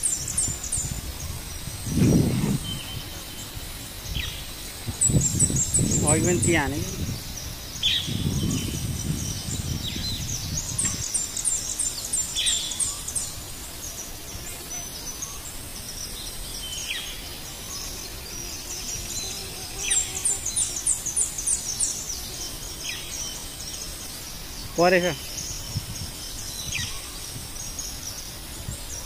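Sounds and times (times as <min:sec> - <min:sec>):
low rumble: 0:01.3 - 0:03.0.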